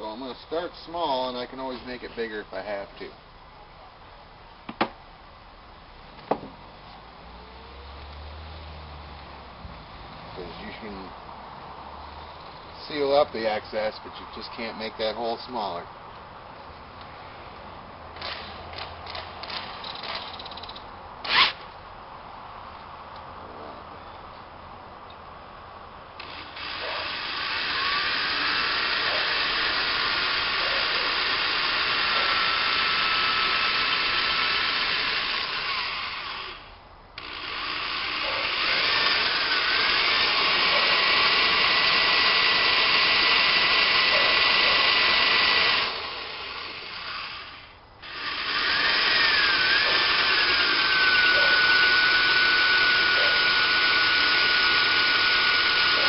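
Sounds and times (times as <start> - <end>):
electric drill whining: 18.2 - 21.6, 26.2 - 56.0.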